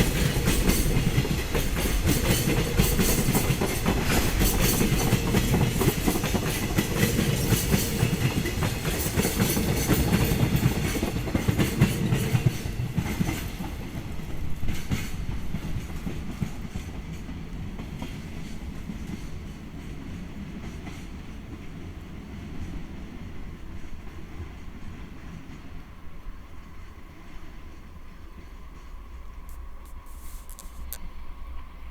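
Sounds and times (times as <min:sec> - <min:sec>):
train wheels clickety-clack: 0:00.0 - 0:31.8.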